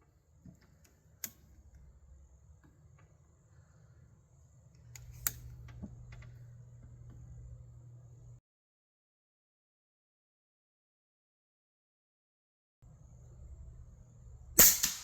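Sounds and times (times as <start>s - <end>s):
low steady hum: 0.0s - 8.4s, 12.8s - 15.0s.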